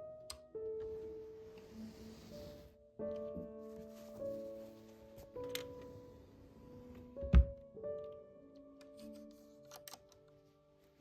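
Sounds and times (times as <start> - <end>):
soft instrumental music: 0.0 - 11.0
loud thump on hard surface: 7.3 - 7.6.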